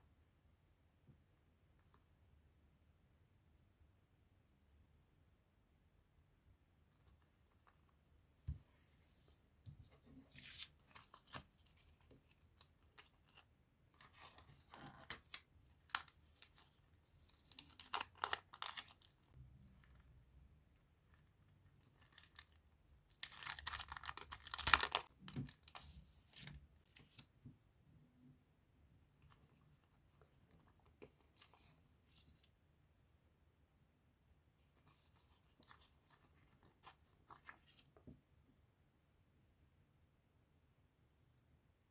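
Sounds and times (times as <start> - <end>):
packaging torn and crinkled: 17.5 - 19.2, 21.9 - 26.5.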